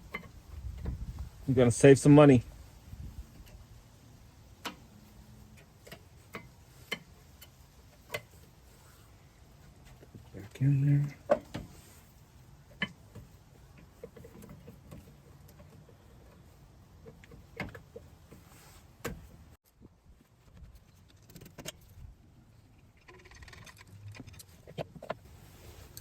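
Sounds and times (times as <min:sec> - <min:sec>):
light metallic clicks and knocks: 0:09.8 - 0:11.8, 0:12.7 - 0:18.4.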